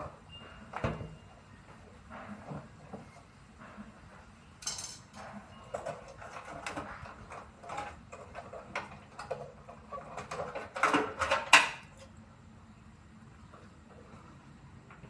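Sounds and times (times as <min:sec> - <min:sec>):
tools clicking and clattering: 0:04.6 - 0:11.9.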